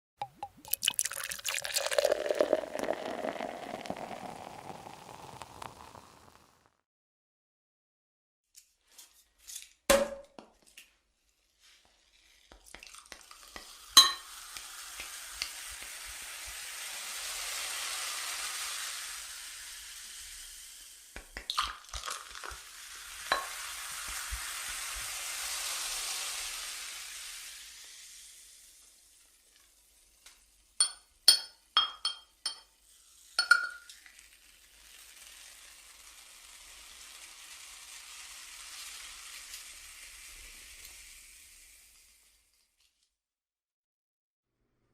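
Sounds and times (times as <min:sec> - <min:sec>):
bottle cap clicks: 0:00.2 - 0:01.0
glass clinking: 0:00.2 - 0:04.4, 0:14.0 - 0:14.3, 0:23.3 - 0:23.6, 0:30.8 - 0:32.7, 0:33.4 - 0:33.9
drink pouring and fizzing: 0:00.2 - 0:06.7, 0:12.2 - 0:43.1.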